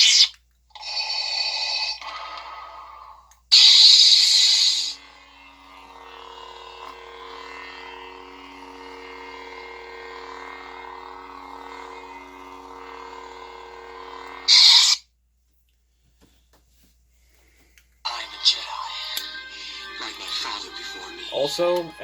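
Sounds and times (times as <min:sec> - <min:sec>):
lightsaber idle hum: 0:01.5 - 0:15.0, 0:18.1 - 0:22.0
loud burst: 0:03.5 - 0:15.0.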